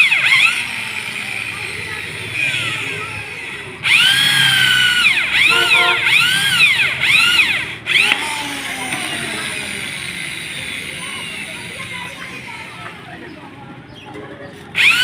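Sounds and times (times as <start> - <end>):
electric drill driving screws: 0.0 - 11.6, 14.8 - 15.0.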